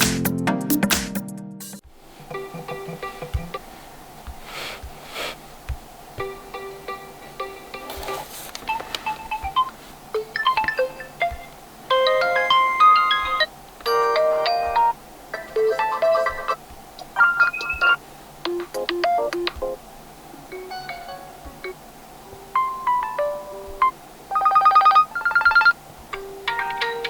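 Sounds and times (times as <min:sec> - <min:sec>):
smartphone ringtone melodies: 0:12.0 - 0:15.0, 0:24.3 - 0:25.8.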